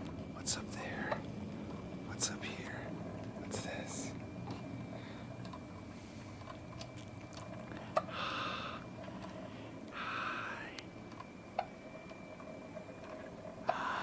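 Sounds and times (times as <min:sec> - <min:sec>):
soft breathy sounds: 0:07.7 - 0:10.9.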